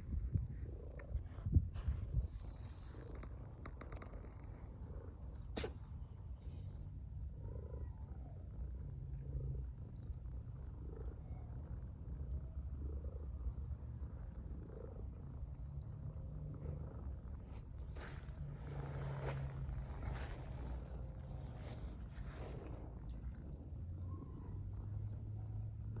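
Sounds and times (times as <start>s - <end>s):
cat purring: 0.0s - 26.0s
cat sneezing: 5.6s - 5.8s.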